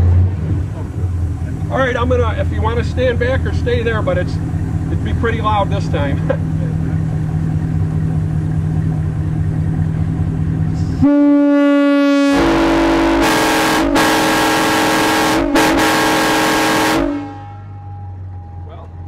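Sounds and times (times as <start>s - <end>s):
steady low hum: 0.4s - 19.0s
locomotive air horn chord: 10.8s - 18.6s.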